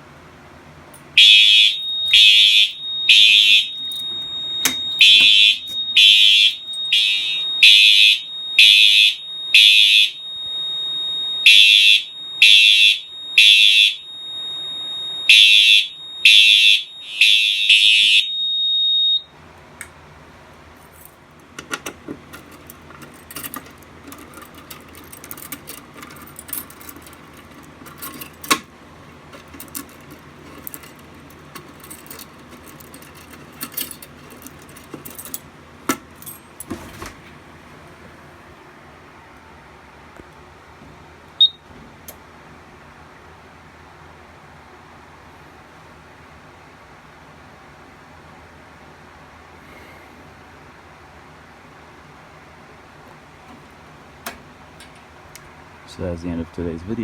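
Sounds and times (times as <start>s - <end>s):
fire alarm horns beeping: 1.2s - 19.3s, 41.4s - 41.6s
small clicks and rattles: 1.7s - 6.9s, 20.9s - 36.8s.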